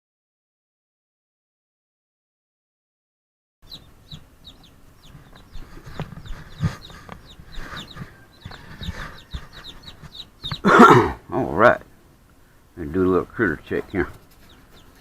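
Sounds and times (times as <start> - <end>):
baby chicks peeping: 3.6 - 15.0.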